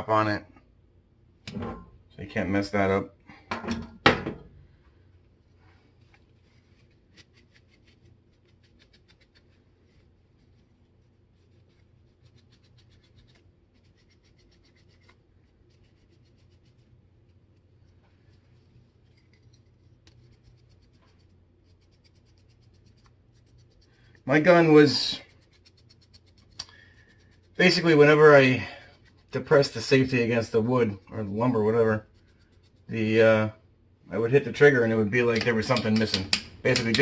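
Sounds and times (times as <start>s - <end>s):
hands scratching small parts: 6.0s - 33.1s, 34.6s - 37.0s.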